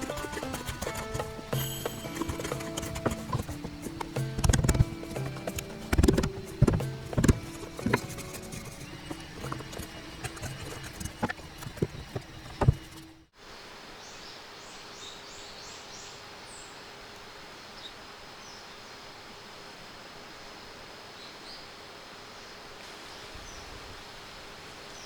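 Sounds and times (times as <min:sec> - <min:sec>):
music with clip-clop rhythm: 0:00.0 - 0:11.2.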